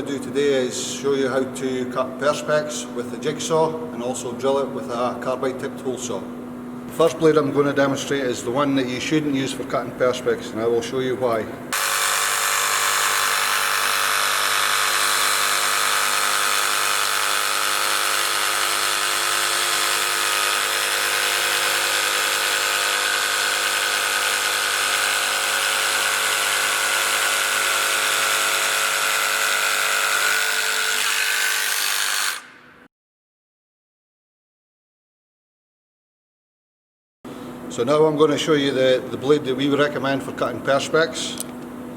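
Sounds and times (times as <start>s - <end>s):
jigsaw sawing plastic sheet: 11.8s - 32.4s.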